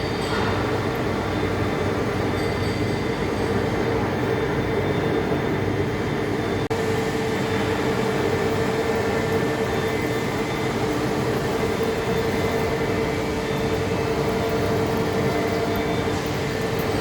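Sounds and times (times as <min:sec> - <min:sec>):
constant machine tones: 0:00.0 - 0:17.0
lathe turning steel: 0:07.3 - 0:17.0.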